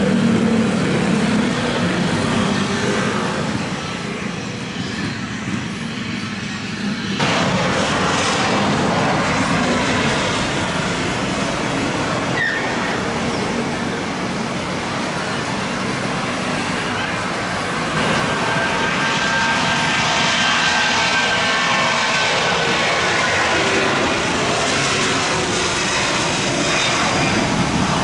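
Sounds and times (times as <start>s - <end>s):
jet engines and airflow rushing: 0.0s - 28.0s.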